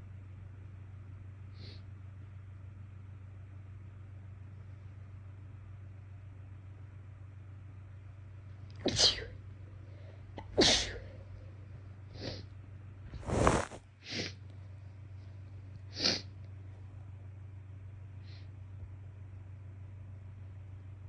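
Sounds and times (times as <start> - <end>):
woman sneezing: 8.9 - 9.3, 10.6 - 11.0.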